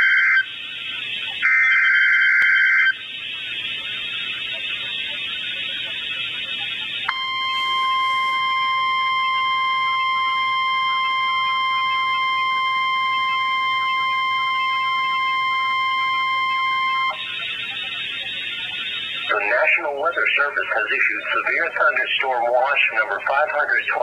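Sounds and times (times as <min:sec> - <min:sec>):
high steady alarm beep: 0:00.0 - 0:24.0
radio hiss: 0:03.0 - 0:08.6, 0:17.0 - 0:24.0.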